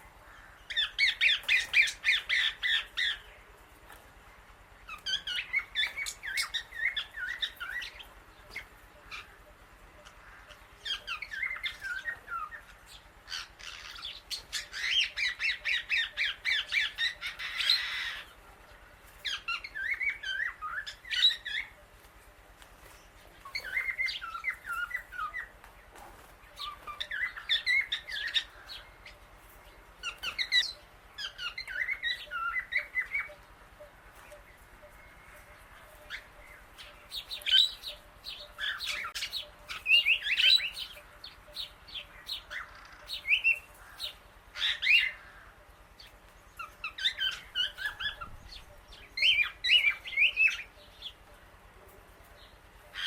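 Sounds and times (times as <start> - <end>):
parrot squawking and chattering: 13.3 - 18.3.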